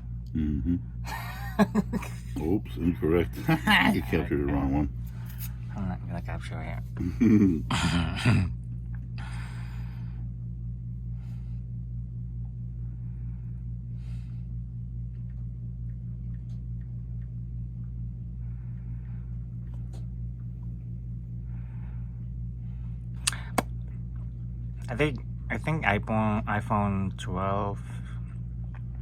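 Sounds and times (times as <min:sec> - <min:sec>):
low machine hum: 0:00.0 - 0:29.0.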